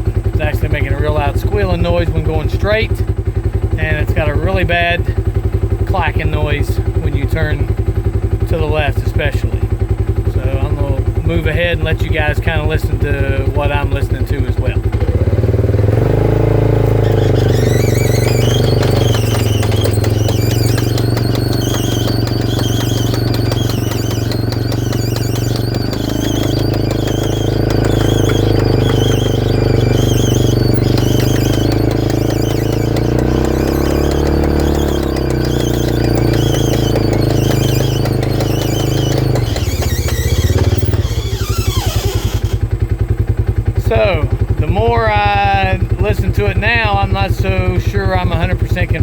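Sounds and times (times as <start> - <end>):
vehicle engine running: 0.0 - 49.0
pulsing high squeal: 15.9 - 42.8.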